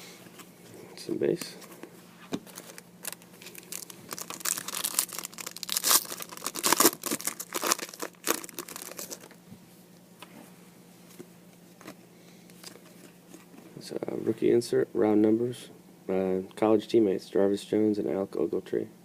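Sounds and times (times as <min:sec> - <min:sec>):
foil wrapper tearing and crinkling: 0:02.6 - 0:09.4.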